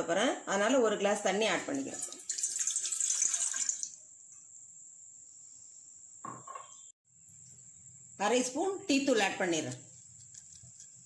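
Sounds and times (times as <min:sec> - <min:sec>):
water pouring into pot: 0:01.8 - 0:04.0.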